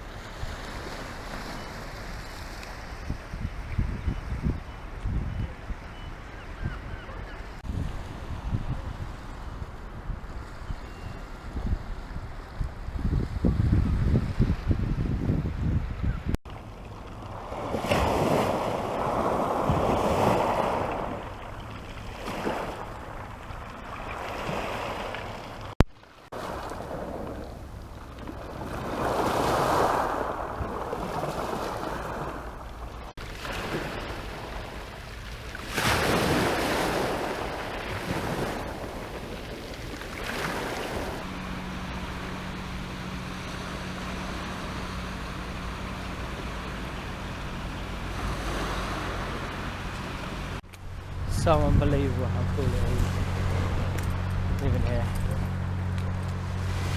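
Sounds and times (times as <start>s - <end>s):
sea waves breaking on shore: 0.0s - 3.4s, 16.5s - 56.9s
wind buffeting microphone: 0.0s - 25.8s, 26.4s - 56.9s
low steady hum: 41.2s - 56.9s.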